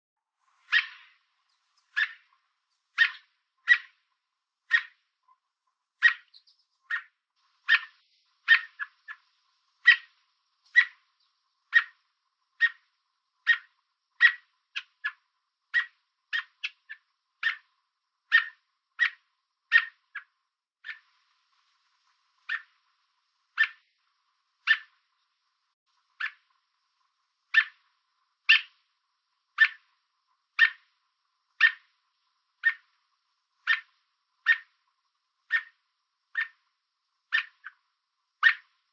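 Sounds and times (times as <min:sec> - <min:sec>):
robin chirping: 0:00.6 - 0:05.4, 0:06.0 - 0:17.7, 0:18.3 - 0:21.1, 0:22.4 - 0:22.8, 0:23.6 - 0:24.0, 0:24.6 - 0:25.4, 0:26.1 - 0:26.5, 0:27.5 - 0:28.8, 0:29.6 - 0:29.9, 0:30.6 - 0:30.9, 0:31.6 - 0:31.9, 0:32.6 - 0:33.0, 0:33.6 - 0:34.8, 0:35.4 - 0:36.7, 0:37.3 - 0:38.8.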